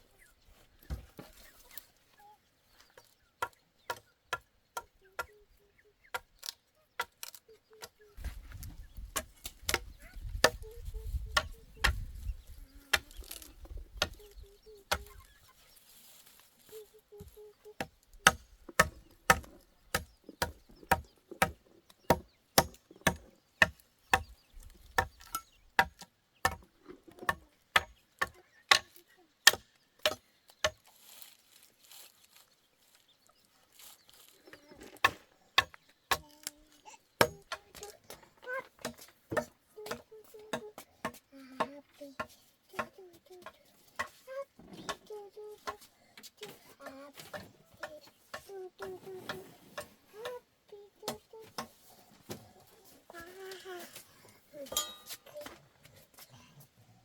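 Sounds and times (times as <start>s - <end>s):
hand tool striking: 17.8s - 24.3s, 25.0s - 30.2s, 37.2s - 37.9s, 54.7s - 55.5s.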